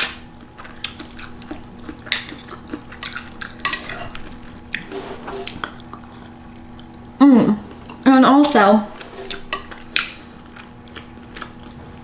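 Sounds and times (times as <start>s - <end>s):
cutlery clinking on dish: 3.6s - 4.2s.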